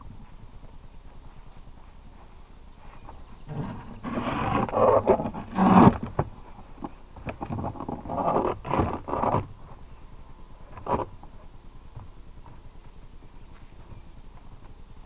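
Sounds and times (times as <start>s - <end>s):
wooden boxes scraping: 3.5s - 9.5s.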